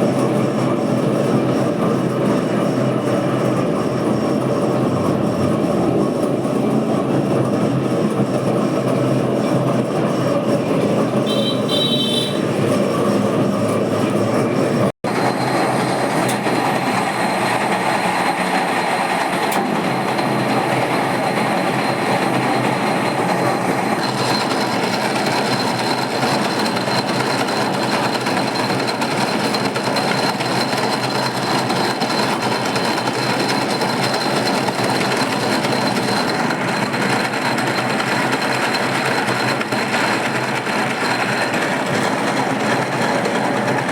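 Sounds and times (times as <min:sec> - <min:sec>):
machine tool rattling clatter: 0:22.2 - 0:43.9.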